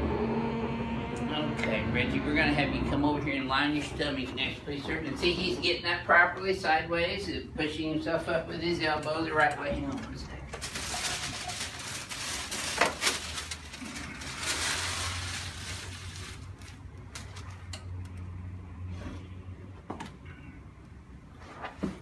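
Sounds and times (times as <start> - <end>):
low steady hum: 0.0 - 21.3
rustling: 10.6 - 17.7.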